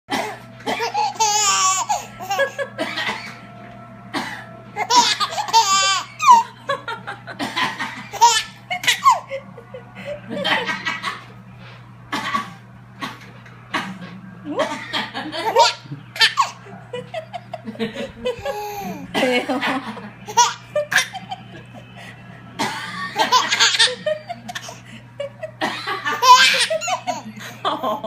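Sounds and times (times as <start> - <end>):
person coughing: 0.1 - 1.1, 2.8 - 3.4, 4.1 - 4.5, 12.1 - 15.1, 22.6 - 23.0
baby laughing: 0.7 - 3.4, 4.8 - 6.6, 7.4 - 9.6, 14.6 - 21.7, 23.0 - 28.0.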